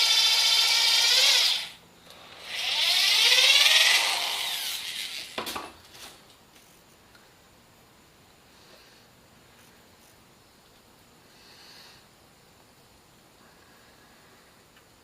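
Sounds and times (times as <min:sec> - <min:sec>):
power drill whining: 0:00.0 - 0:05.5.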